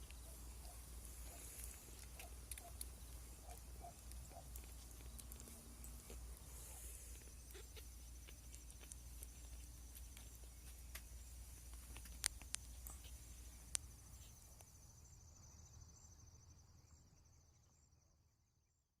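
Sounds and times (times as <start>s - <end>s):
insects trilling: 0.0s - 18.3s
sharp clicks: 7.2s - 13.9s.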